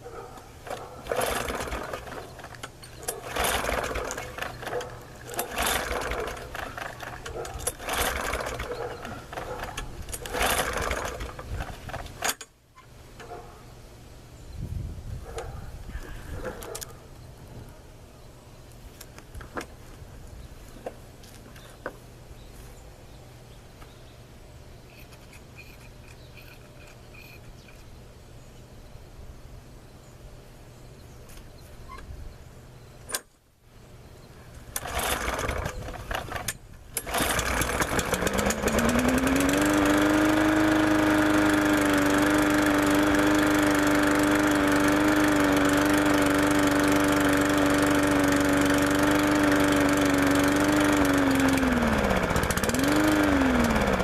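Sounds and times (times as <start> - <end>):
mower engine pull-started: 0.6 - 12.5, 34.6 - 54.0.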